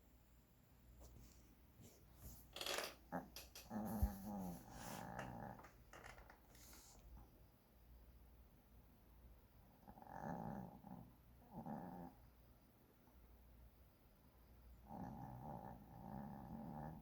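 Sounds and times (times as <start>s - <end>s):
puppy snoring: 3.1s - 7.0s, 9.6s - 12.3s, 14.8s - 17.0s.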